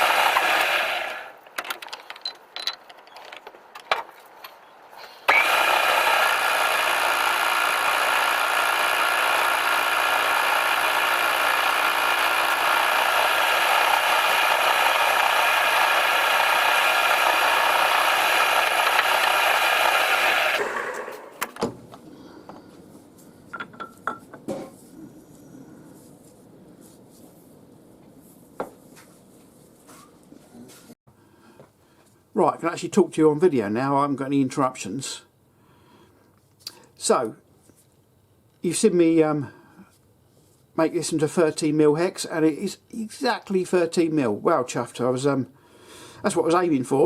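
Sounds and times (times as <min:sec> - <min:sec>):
handling clicks and knocks: 0:01.4 - 0:04.7
machine motor whining: 0:05.3 - 0:21.6.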